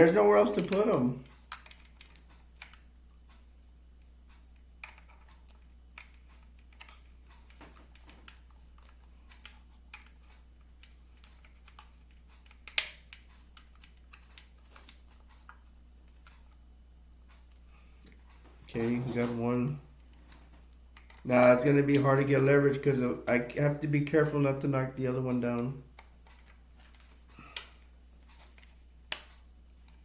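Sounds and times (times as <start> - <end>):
plastic toy parts clicking: 0.5 - 2.9, 4.8 - 16.6.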